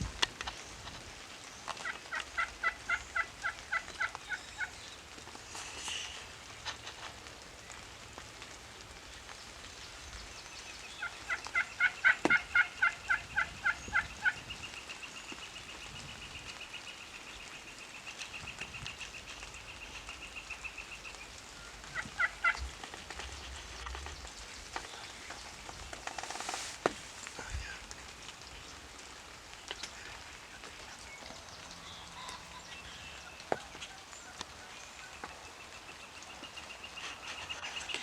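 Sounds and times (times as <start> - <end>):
turkey yelping: 1.8 - 4.7, 11.0 - 14.4, 21.9 - 22.7.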